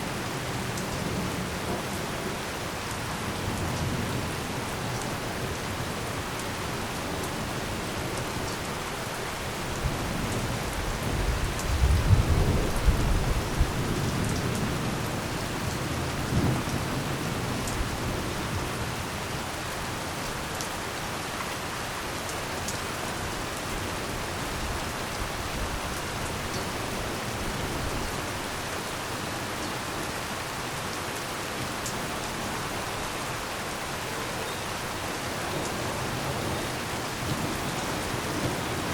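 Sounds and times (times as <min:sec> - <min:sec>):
heavy rain falling: 0:00.0 - 0:38.9.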